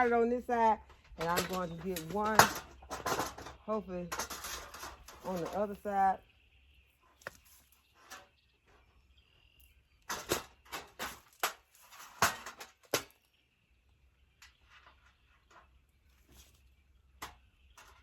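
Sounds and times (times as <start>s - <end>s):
panels and bolts knocking: 0.8s - 5.7s.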